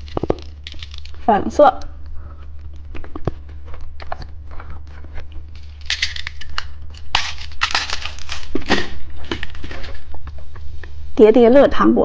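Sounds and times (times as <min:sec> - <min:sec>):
plastic wrapper crinkling and tearing: 0:00.0 - 0:01.3, 0:05.4 - 0:10.3
steady low hum: 0:00.0 - 0:12.0.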